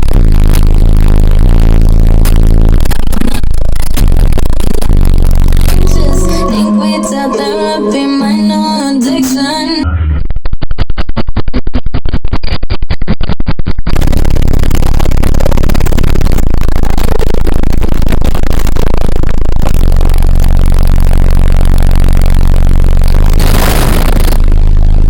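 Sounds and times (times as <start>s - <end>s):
loud bass music from car subwoofers: 0.0s - 6.4s, 19.6s - 25.0s.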